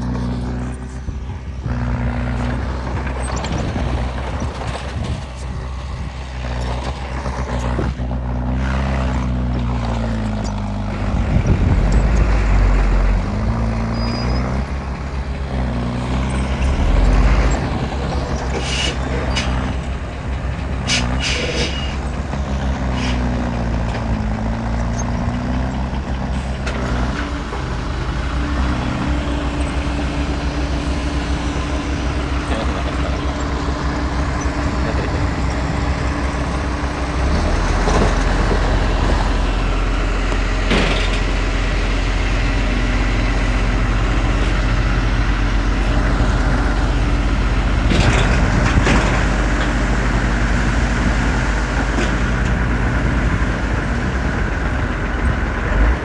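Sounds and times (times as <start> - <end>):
heavy diesel machinery engine: 0.0 - 56.0.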